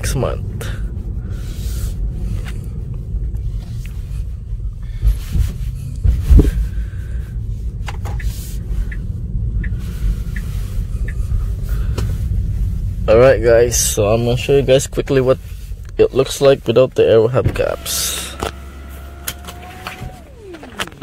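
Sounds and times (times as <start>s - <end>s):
road and tyre rumble: 0.0s - 21.0s.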